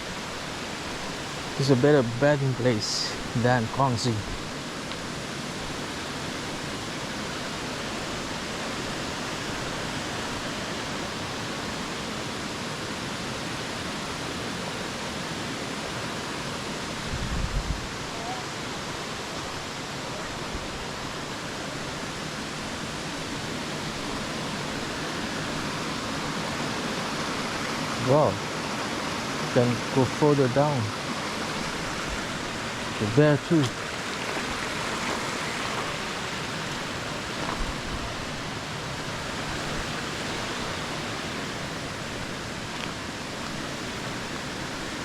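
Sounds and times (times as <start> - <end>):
waterfall rushing: 0.0 - 45.0.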